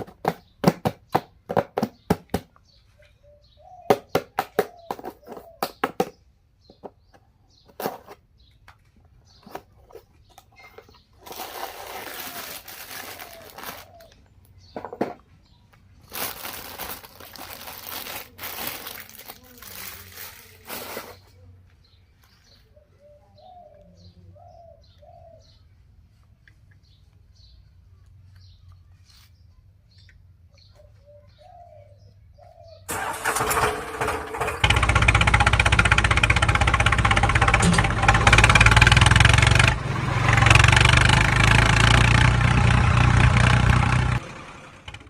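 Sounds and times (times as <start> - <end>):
bird cooing: 3.0 - 3.9, 12.3 - 14.2, 22.7 - 25.6, 30.7 - 32.8
tractor diesel engine running: 32.9 - 45.0.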